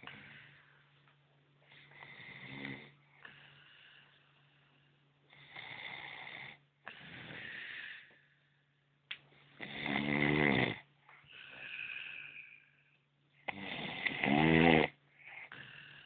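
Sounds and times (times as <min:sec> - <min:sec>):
man snoring: 0:01.8 - 0:03.0, 0:05.3 - 0:07.9, 0:09.6 - 0:10.8, 0:13.5 - 0:16.0.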